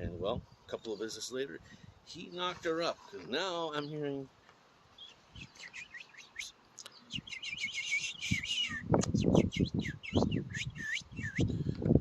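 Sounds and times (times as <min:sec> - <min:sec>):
person mimicking bird chirps: 0:05.4 - 0:11.6.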